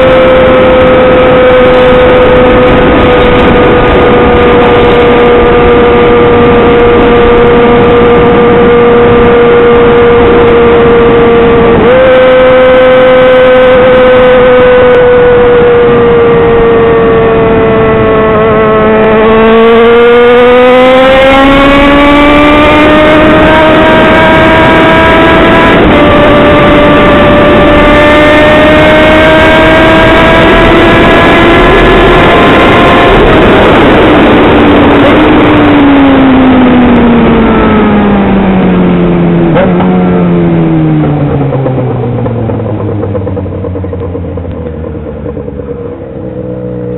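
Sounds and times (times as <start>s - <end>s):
loud motorcycle engine revving: 0.0s - 46.9s.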